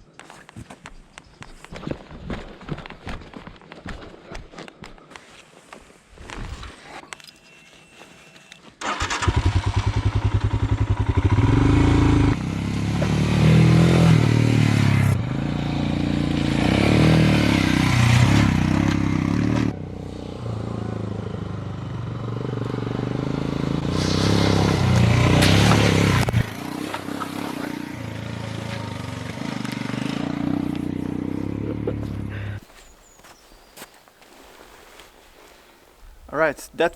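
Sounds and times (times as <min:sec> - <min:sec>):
motorcycle engine idling and revving: 0:08.9 - 0:32.6.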